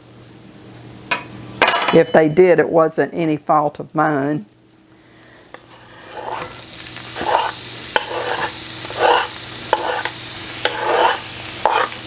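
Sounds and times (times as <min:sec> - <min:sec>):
onions sizzling in a skillet: 0:00.0 - 0:02.6, 0:03.7 - 0:12.0
utensil scraping a pan: 0:05.6 - 0:12.0.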